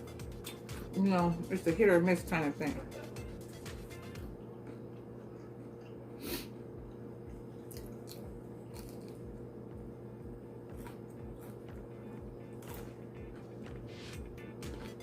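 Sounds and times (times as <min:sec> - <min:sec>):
crunchy bite and chewing: 0:07.6 - 0:09.4, 0:10.7 - 0:11.8, 0:12.5 - 0:13.5.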